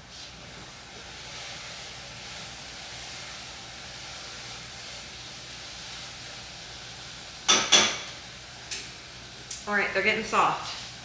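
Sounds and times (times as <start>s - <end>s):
apples cooking in a pot hissing: 0.0s - 11.0s.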